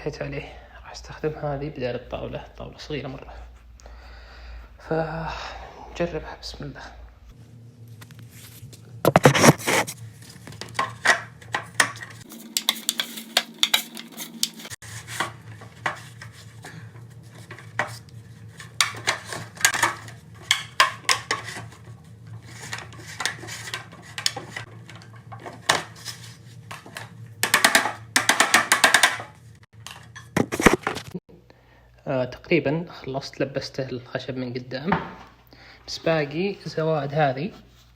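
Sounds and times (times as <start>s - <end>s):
aluminium sheet crinkling and clattering: 8.2s - 31.2s.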